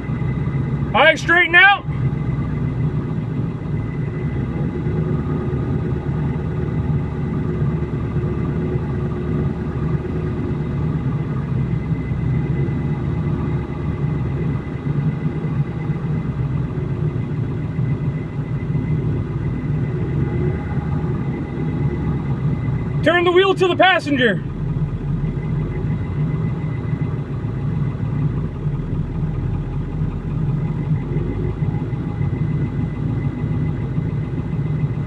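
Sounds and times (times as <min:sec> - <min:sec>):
vehicle engine idling low: 0:00.0 - 0:35.0.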